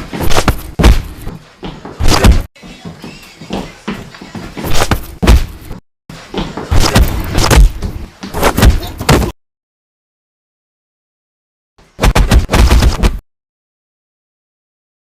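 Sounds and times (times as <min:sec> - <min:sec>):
punch and hit impacts: 0:00.2 - 0:01.3, 0:02.0 - 0:02.5, 0:04.7 - 0:05.8, 0:06.7 - 0:09.4, 0:12.0 - 0:13.2.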